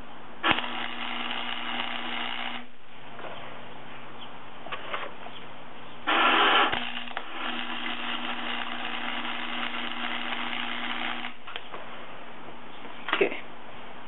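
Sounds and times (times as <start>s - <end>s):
low electrical hum: 0.0s - 14.0s
welding arc crackling hiss: 0.4s - 2.7s, 6.1s - 11.6s.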